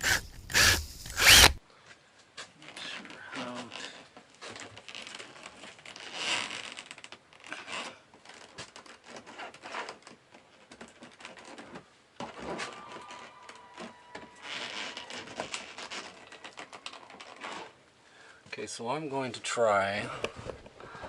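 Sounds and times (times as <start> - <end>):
rubbing and scraping: 0.0 - 1.6, 14.6 - 17.8.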